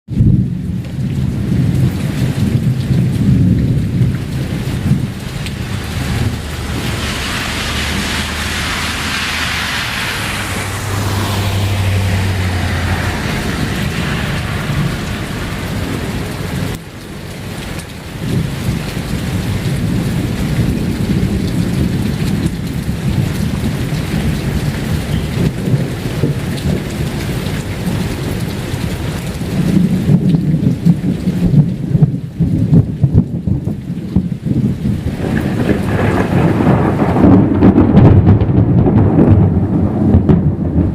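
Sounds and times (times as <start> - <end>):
rain falling: 0.1 - 40.9
thunder rumbling: 0.1 - 40.9
hissing thunder crash: 1.4 - 16.9, 35.1 - 40.9.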